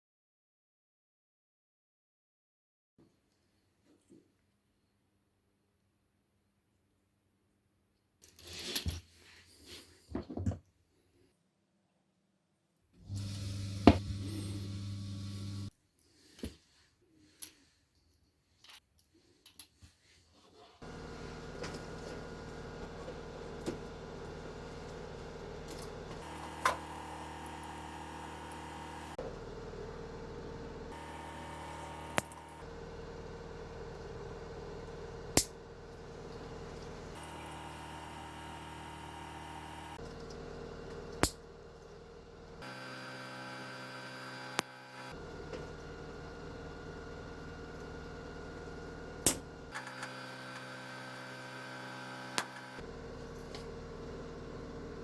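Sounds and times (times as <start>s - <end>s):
electrical hum: 13.0s - 15.7s, 20.8s - 55.0s
buzzing tone: 13.1s - 15.7s, 26.2s - 29.2s.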